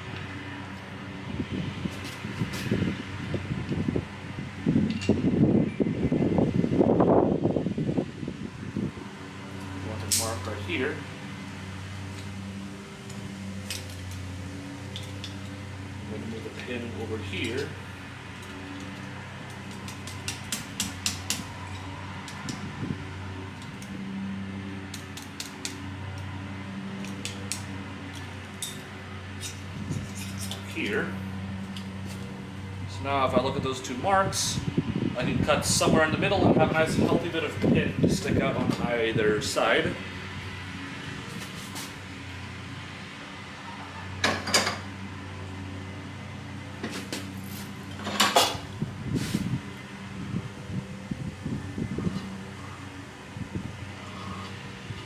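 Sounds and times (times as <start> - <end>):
fan-like hum: 0.0 - 55.0
tools and metal parts clattering: 13.1 - 22.6, 27.0 - 32.2, 44.2 - 44.9, 46.8 - 48.8.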